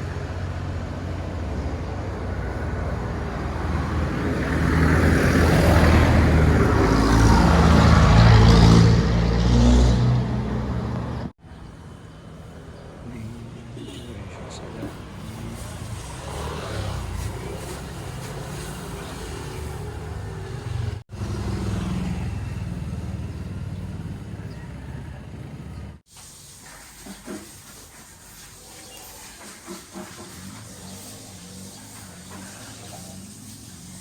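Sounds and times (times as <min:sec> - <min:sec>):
car rumbling on road: 0:00.0 - 0:11.4.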